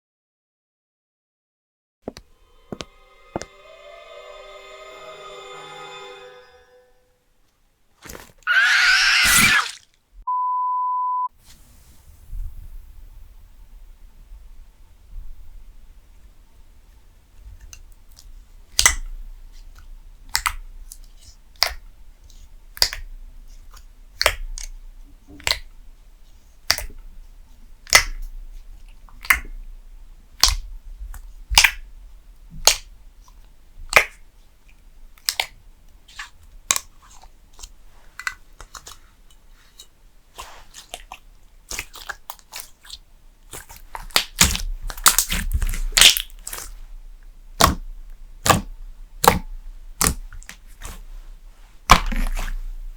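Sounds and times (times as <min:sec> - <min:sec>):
slime popping and crackling: 0:41.7 - 0:46.7.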